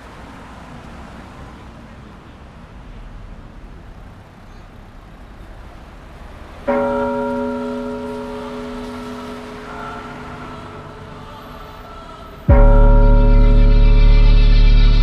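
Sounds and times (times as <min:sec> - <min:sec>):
faint street noise: 0:00.0 - 0:15.0
bell-like chord ringing: 0:06.7 - 0:15.0.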